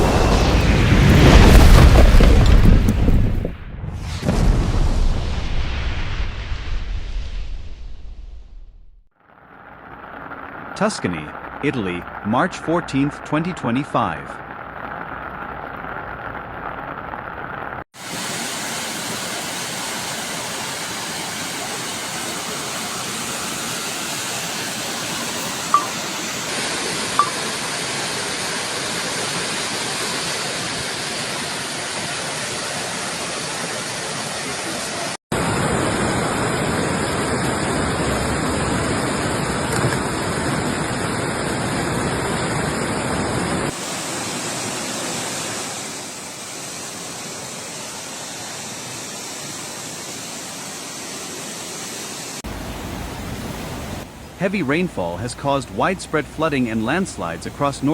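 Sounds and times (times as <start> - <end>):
floodwater rushing: 14.4 - 57.9
high-pitched tones: 25.5 - 26.4, 27.2 - 27.5.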